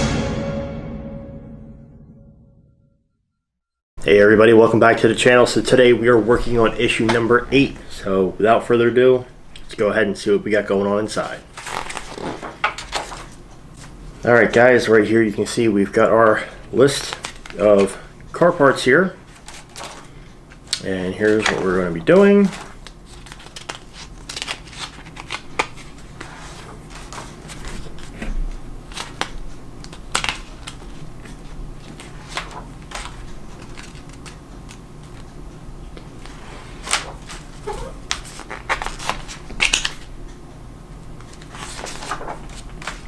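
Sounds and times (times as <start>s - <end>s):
packaging rustling and crinkling: 11.2s - 14.0s, 19.3s - 28.1s, 36.0s - 40.2s, 41.2s - 43.0s.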